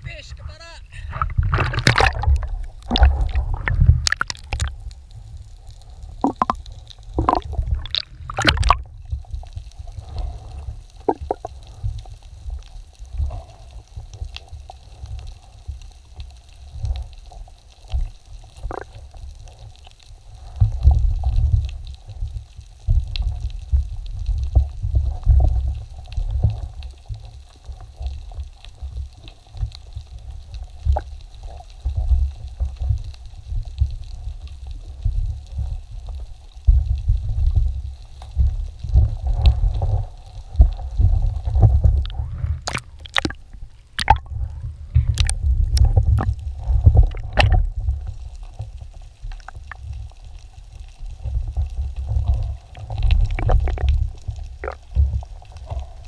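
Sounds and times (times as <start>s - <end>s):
underwater churning rumble: 0.9s - 15.9s, 18.0s - 19.5s, 30.1s - 56.0s.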